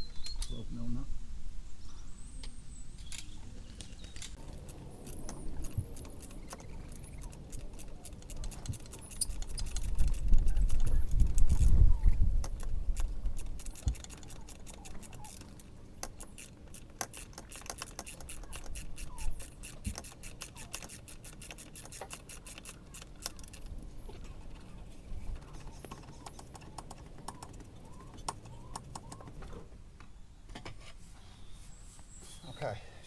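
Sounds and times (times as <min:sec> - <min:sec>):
socket ratchet clicking: 0:04.4 - 0:24.1, 0:25.4 - 0:29.4.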